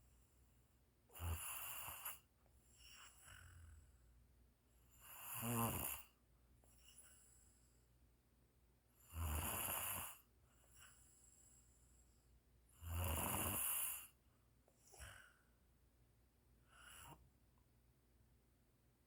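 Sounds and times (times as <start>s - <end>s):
loud snores: 1.1s - 2.2s, 5.0s - 6.2s, 9.1s - 10.2s, 12.8s - 14.2s
faint breaths: 10.1s - 12.5s, 13.9s - 15.7s, 16.6s - 17.3s.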